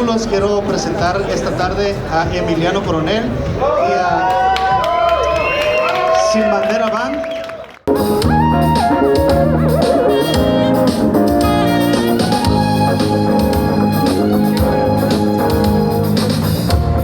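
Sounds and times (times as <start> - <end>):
drums: 0.0 - 6.1, 7.9 - 17.0
bass: 7.9 - 17.0
organ-like keyboard chords: 7.9 - 17.0.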